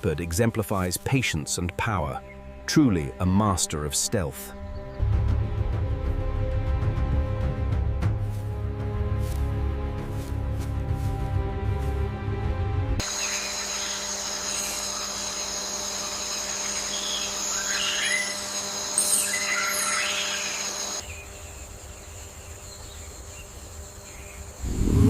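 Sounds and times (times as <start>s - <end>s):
birds chirping: 0.0s - 5.6s, 13.0s - 25.0s
insect trill: 13.0s - 25.0s
low rumble: 24.6s - 25.0s.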